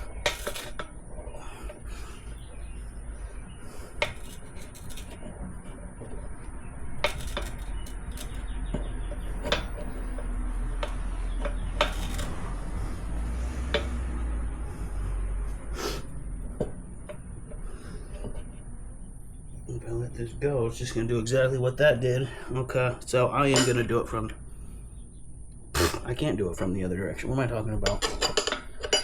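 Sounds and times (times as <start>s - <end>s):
tire irons clinking on wheel rim: 0.0s - 14.2s, 27.6s - 29.0s.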